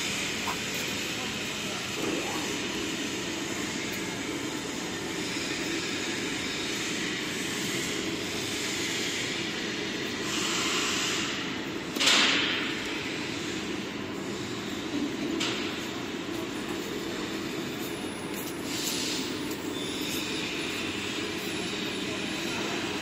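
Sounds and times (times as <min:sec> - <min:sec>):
machine whirring and hissing: 0:00.0 - 0:23.0
sharp hiss of air: 0:10.2 - 0:11.4.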